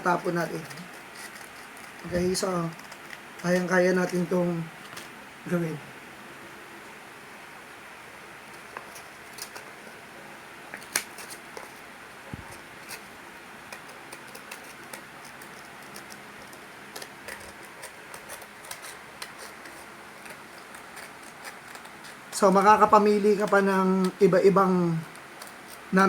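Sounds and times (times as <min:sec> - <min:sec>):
faint steady hiss: 0:00.0 - 0:26.0.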